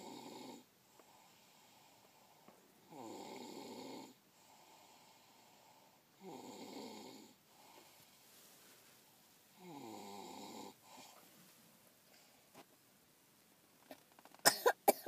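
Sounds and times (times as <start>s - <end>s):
loud snores: 0.0s - 0.7s, 2.9s - 7.8s, 9.6s - 11.1s
quiet breathing: 0.0s - 12.8s.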